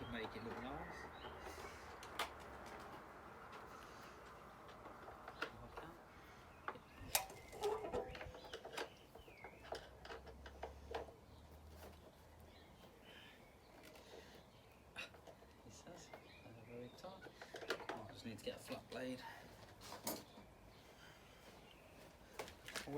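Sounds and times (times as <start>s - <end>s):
hand tools clicking and knocking: 0.0s - 12.1s, 15.0s - 19.1s.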